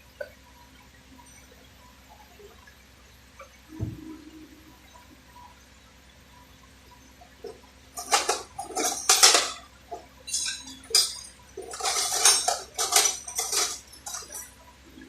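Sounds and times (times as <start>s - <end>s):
metal tools clattering and scraping: 7.4s - 14.5s.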